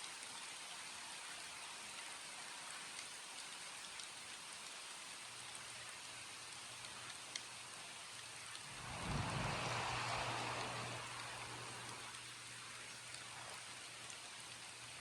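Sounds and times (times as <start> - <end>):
steady rain falling: 0.0 - 15.0
low rumble: 8.7 - 12.1.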